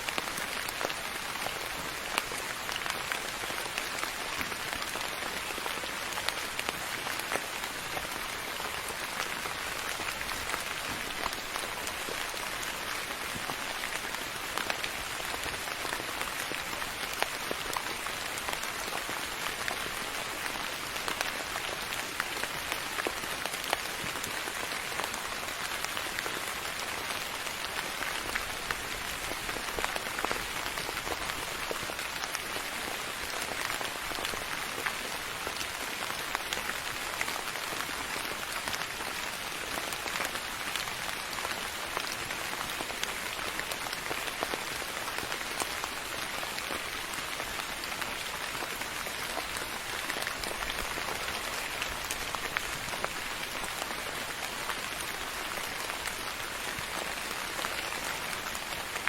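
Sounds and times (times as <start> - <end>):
steady rain patter: 0.0 - 59.0.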